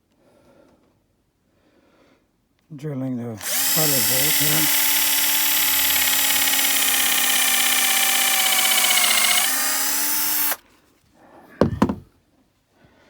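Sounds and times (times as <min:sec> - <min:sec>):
electric drill whining: 0:03.4 - 0:10.6.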